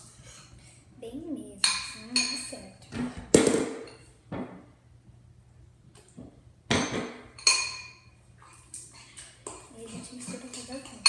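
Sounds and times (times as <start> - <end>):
utensil clinking against bowl: 1.6 - 2.6, 6.8 - 11.0.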